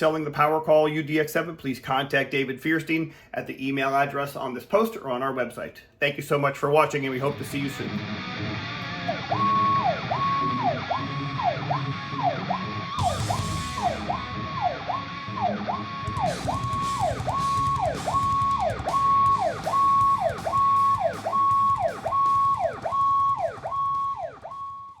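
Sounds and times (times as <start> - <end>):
electronic emergency siren: 9.1 - 25.0.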